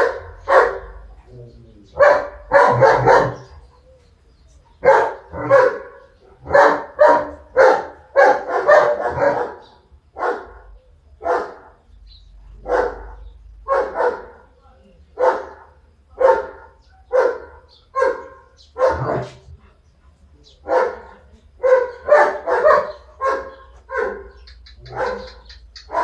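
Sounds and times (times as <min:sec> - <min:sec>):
dog barking: 0:00.0 - 0:01.1, 0:01.9 - 0:03.6, 0:04.8 - 0:11.8, 0:12.5 - 0:14.6, 0:15.2 - 0:19.4, 0:20.6 - 0:26.0.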